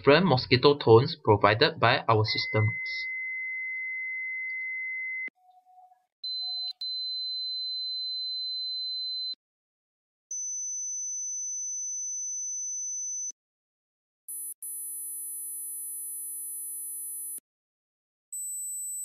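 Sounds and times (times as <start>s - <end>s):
high-pitched sine-wave alarm tones: 6.2s - 7.8s.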